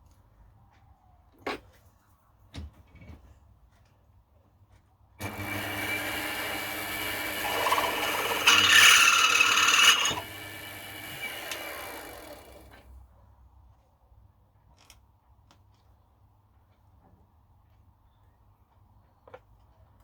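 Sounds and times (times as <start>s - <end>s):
milling machine motor whine: 5.2s - 12.8s.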